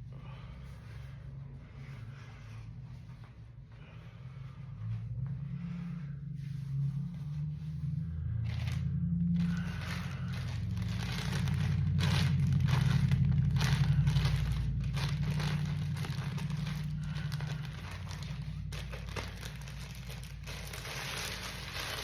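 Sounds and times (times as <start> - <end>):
breathing through a mask: 0.0 - 12.2, 13.3 - 22.0.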